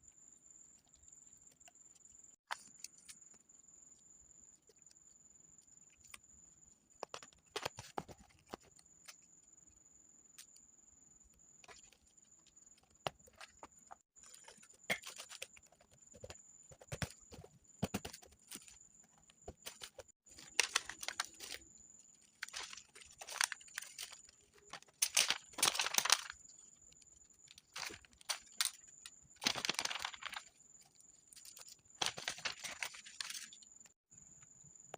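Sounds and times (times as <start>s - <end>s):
paper rustling and tearing: 19.7s - 21.6s, 22.4s - 26.4s, 27.7s - 28.8s, 29.4s - 30.5s, 31.3s - 33.6s.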